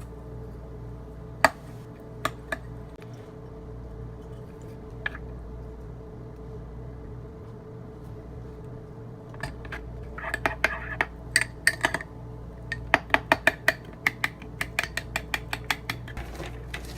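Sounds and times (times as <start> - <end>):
steady low hum: 0.0 - 16.9.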